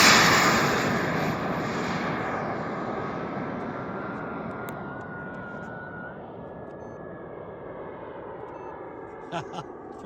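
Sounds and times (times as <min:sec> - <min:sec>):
model jet turbine passing: 0:00.0 - 0:06.4
high turbine whine: 0:00.0 - 0:10.0.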